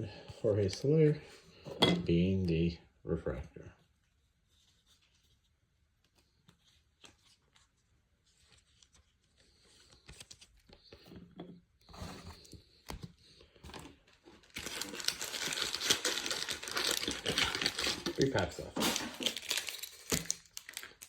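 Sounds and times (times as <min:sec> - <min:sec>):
card pack wrapper tearing: 0:14.4 - 0:21.0.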